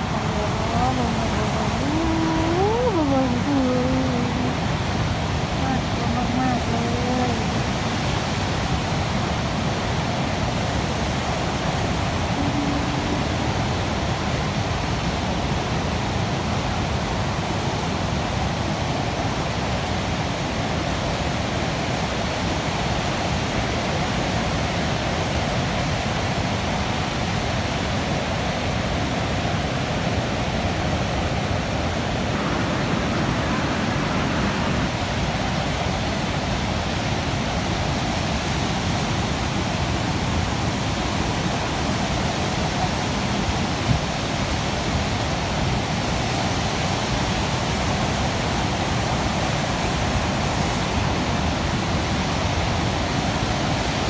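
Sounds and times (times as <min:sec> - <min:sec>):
waves breaking in rough sea: 0:00.0 - 0:54.0.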